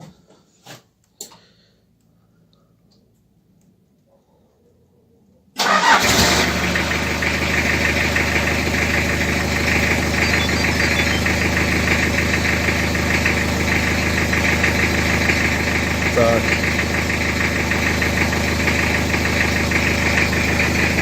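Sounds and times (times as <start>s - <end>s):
truck engine starting and idling: 5.6s - 21.0s.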